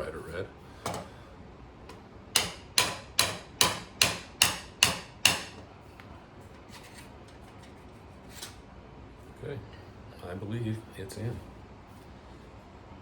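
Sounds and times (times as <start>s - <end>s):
hammer tapping on wood: 2.4s - 5.6s.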